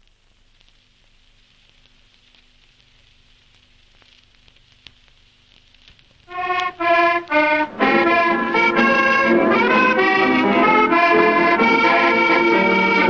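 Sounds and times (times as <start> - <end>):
faint hiss: 0.0 - 13.0
tango accordion melody: 6.3 - 13.0.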